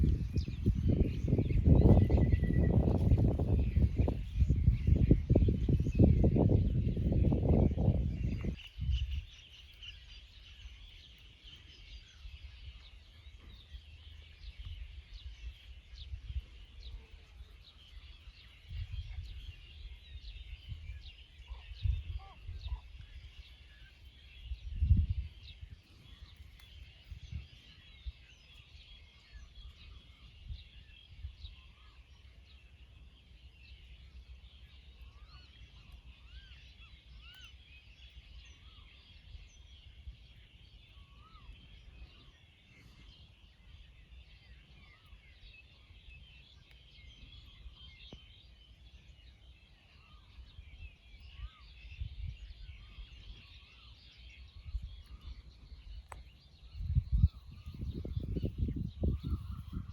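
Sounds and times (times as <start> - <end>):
wind buffeting microphone: 0.0 - 10.8, 11.8 - 31.6, 50.5 - 53.7, 54.3 - 59.9
small birds chirping: 0.0 - 59.9.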